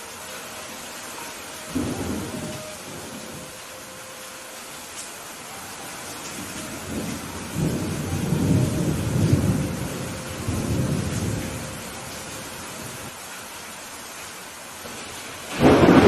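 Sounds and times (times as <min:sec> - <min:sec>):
steady rain hissing: 0:00.0 - 0:16.0
thunder rumbling: 0:01.7 - 0:03.5, 0:06.2 - 0:13.1, 0:14.9 - 0:16.0.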